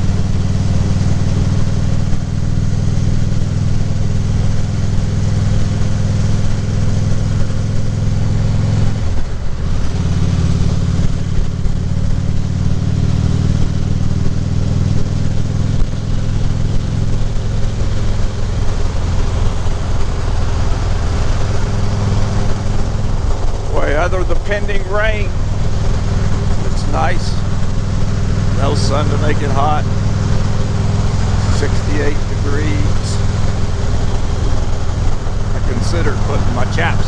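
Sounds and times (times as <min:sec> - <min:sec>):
motorcycle engine running: 0:00.0 - 0:37.0.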